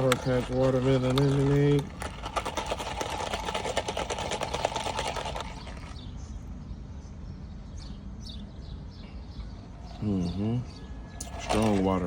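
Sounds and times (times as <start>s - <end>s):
ice rattling in cup: 0.0s - 6.0s, 11.2s - 12.0s.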